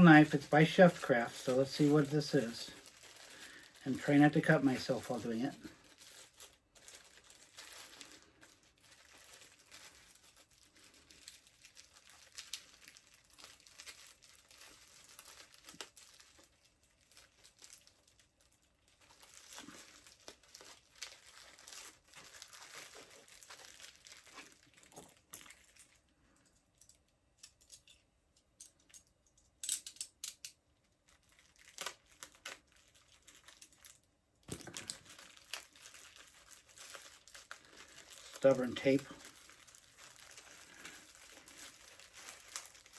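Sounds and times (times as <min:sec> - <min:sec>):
packaging crinkling: 0:00.0 - 0:28.0, 0:30.8 - 0:42.9
packing tape pulled and torn: 0:05.9 - 0:26.0, 0:29.6 - 0:42.9.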